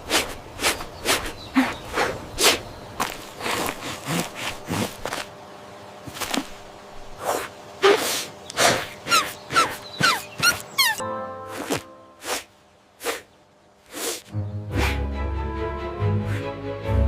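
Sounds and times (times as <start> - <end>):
faint steady hum: 0.0 - 14.3
quick falling squeaks: 7.8 - 11.0.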